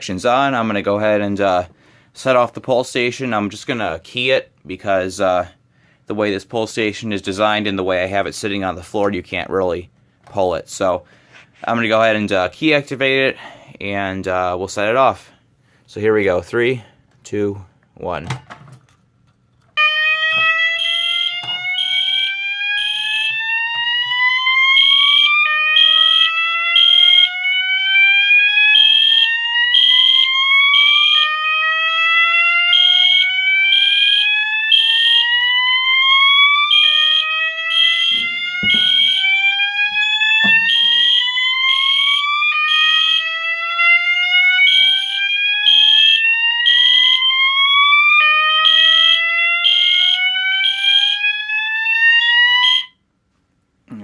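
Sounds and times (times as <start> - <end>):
fire alarm horn beeping: 19.8 - 53.0
fire alarm slow whoop: 19.8 - 53.0.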